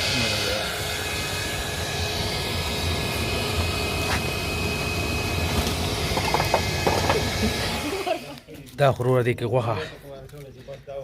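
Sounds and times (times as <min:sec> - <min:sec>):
air blower motor whine: 0:00.0 - 0:08.5.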